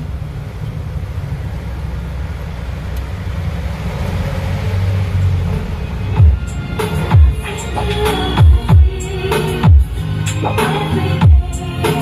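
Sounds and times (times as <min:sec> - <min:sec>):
deep bass rumble from speakers: 0:00.0 - 0:12.0.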